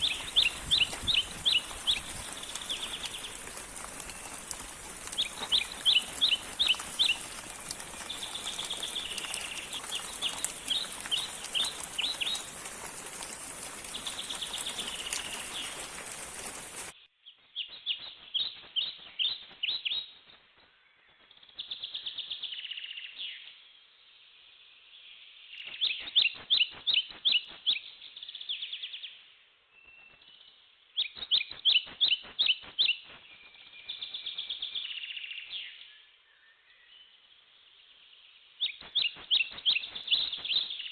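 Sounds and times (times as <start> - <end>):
songbird singing: 0.0 - 16.9, 29.7 - 40.9.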